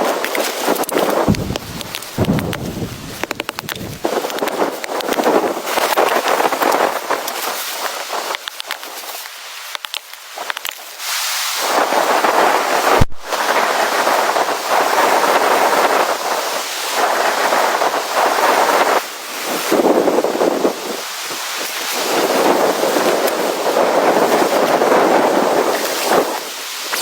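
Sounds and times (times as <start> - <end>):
wind gusts buffeting microphone: 0.0 - 9.0, 11.6 - 27.0
low thump: 1.3 - 4.0.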